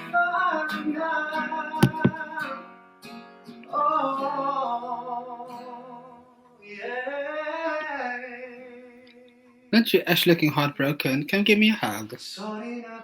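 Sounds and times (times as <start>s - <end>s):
acoustic guitar: 0.0s - 11.0s
man singing: 6.7s - 8.9s, 11.6s - 13.0s.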